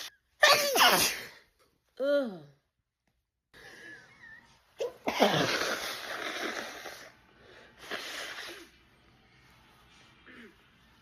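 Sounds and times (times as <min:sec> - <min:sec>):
woman sneezing: 0:00.4 - 0:01.4
noisy breath: 0:06.0 - 0:08.9.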